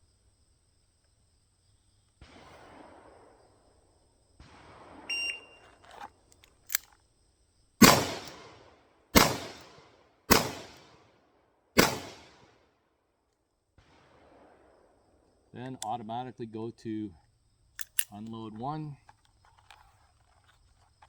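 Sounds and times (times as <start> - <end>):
shot timer beep: 5.1 - 5.6
light clicks: 17.8 - 21.0.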